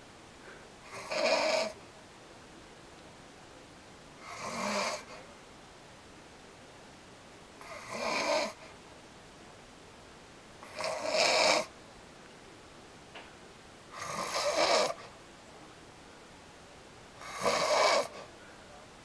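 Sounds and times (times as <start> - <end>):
man snoring: 0.8 - 1.8, 4.2 - 5.1, 7.6 - 8.6, 10.6 - 11.7, 13.9 - 15.0, 17.2 - 18.2.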